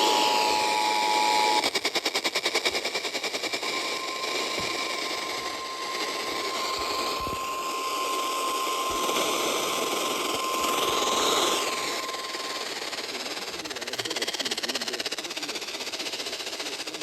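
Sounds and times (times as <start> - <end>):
faint steady high tone: 0.0 - 1.7, 3.6 - 13.9
radio static hiss: 0.0 - 17.0.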